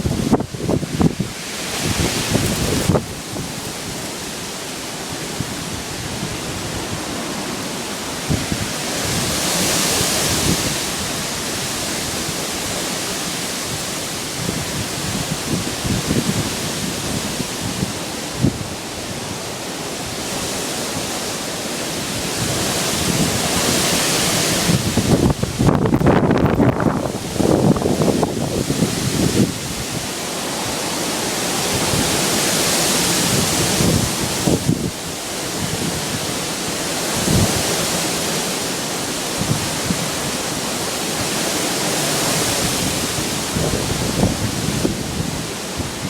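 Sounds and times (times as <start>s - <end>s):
wind buffeting microphone: 0.0s - 21.2s, 21.9s - 46.0s
strong wind blowing: 0.0s - 46.0s.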